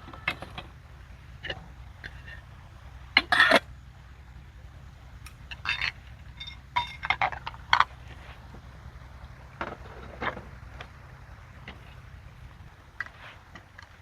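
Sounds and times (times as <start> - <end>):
low hum: 0.0 - 14.0
small hard items clinking: 5.5 - 7.9.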